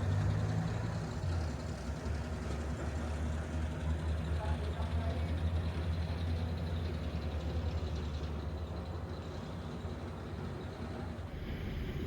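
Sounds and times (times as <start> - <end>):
low ship engine rumble: 11.0 - 12.0.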